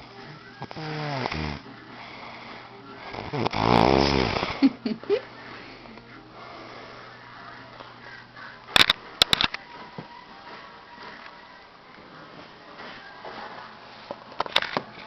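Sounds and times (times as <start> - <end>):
man snoring: 0.6 - 4.8.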